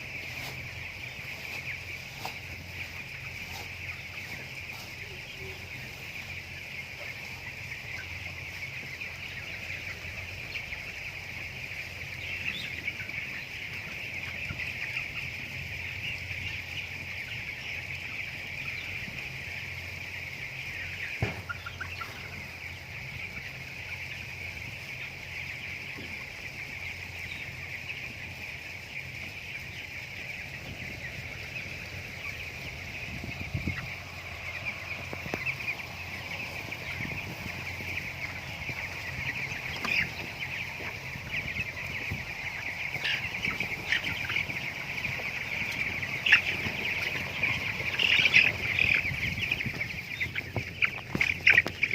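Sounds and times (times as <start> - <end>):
chickens peeping and clucking: 0.0 - 51.9.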